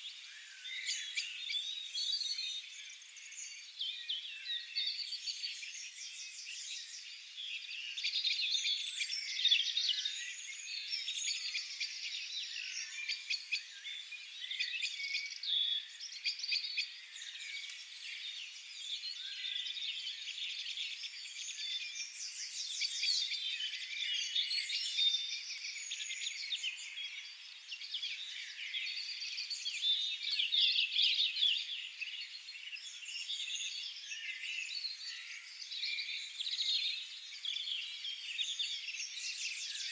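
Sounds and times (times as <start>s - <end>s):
songbirds chirping and trilling: 0.0s - 39.9s.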